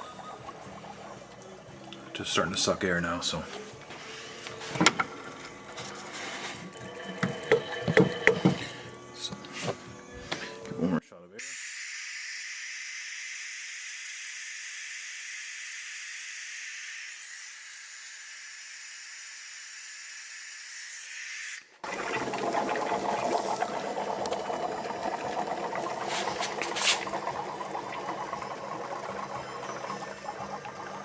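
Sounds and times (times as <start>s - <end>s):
oil extractor hissing: 0.0s - 10.6s, 21.8s - 31.0s
clatter of knocks and scraping: 4.5s - 8.8s.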